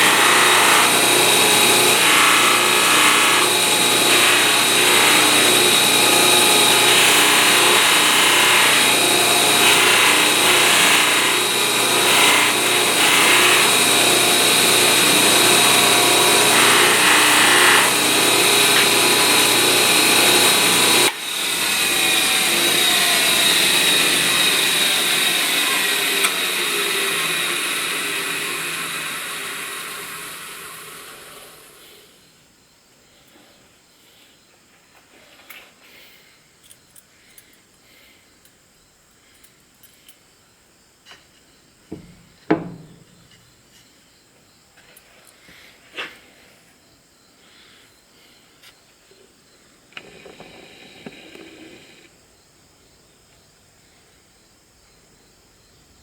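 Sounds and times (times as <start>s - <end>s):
electric power tool running: 0.0s - 32.0s, 50.0s - 52.1s.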